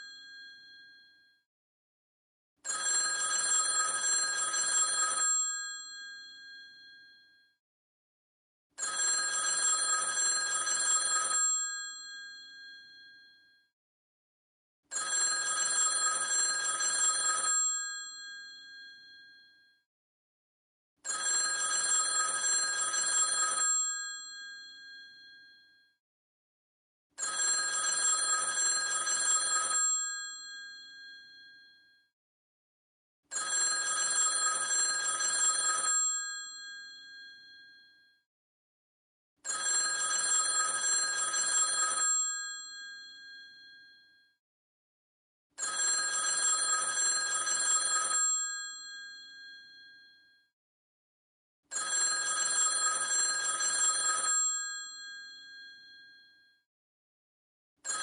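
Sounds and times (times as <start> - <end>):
telephone bell ringing: 2.6 - 7.4, 8.8 - 13.5, 14.9 - 19.6, 21.0 - 25.8, 27.2 - 32.0, 33.3 - 38.0, 39.4 - 44.2, 45.6 - 50.3, 51.7 - 56.4.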